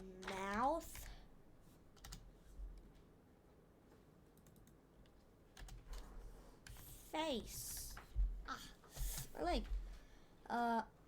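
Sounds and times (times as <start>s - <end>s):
typing on computer keyboard: 2.0s - 2.3s, 4.4s - 4.8s, 5.6s - 6.1s.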